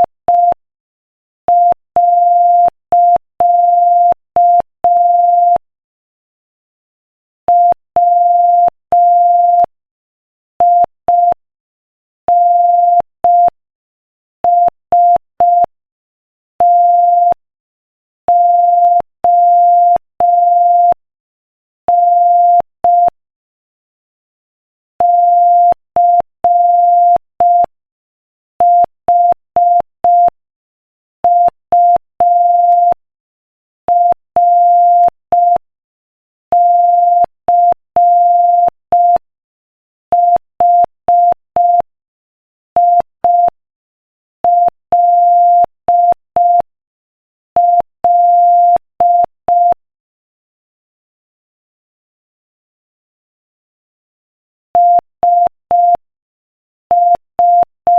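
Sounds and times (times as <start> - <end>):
morse code beeps: 21.9 - 23.2, 25.0 - 27.7, 28.6 - 30.4, 31.2 - 33.0, 33.9 - 35.6, 36.5 - 39.3, 40.1 - 41.9, 42.8 - 43.6, 44.4 - 46.7, 47.6 - 49.8, 54.8 - 56.0, 56.9 - 57.9.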